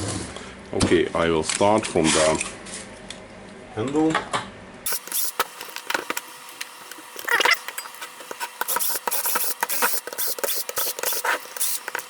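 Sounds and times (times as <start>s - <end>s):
scratchy rattling: 4.9s - 12.0s
tools clicking and scraping plastic: 4.9s - 12.0s.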